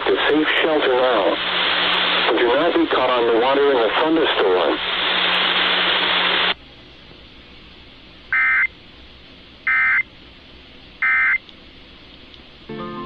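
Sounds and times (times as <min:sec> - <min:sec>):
radio static hiss: 0:00.0 - 0:06.6
data tone bursts: 0:08.4 - 0:08.7.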